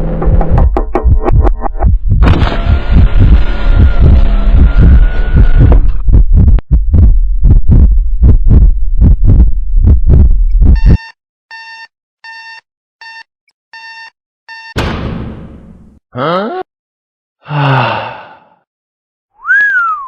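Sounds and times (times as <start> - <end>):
fast deep heartbeat thumps: 0.0 - 11.0
short electronic beeps: 10.7 - 14.8.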